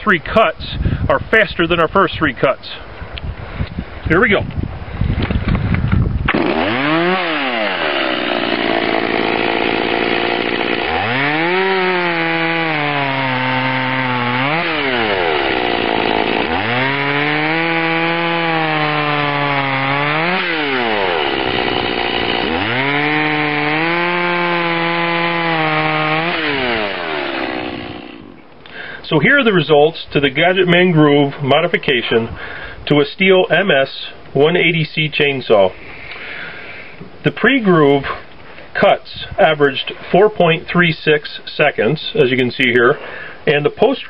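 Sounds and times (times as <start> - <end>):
chainsaw cutting log: 6.2 - 28.6.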